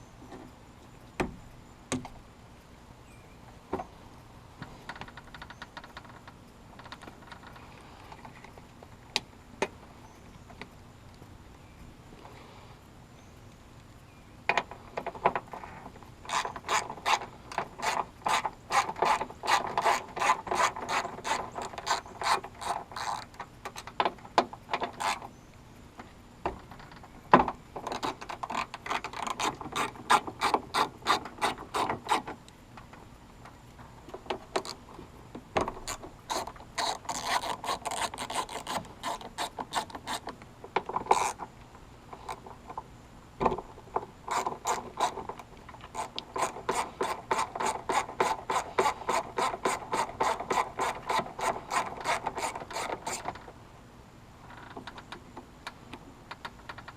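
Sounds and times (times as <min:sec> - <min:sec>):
ratchet wrench clicking: 0:16.3 - 0:23.8.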